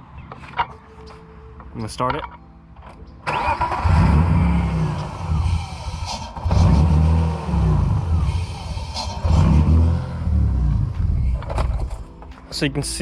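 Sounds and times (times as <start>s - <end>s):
car engine starting and idling roughly: 3.2s - 12.1s.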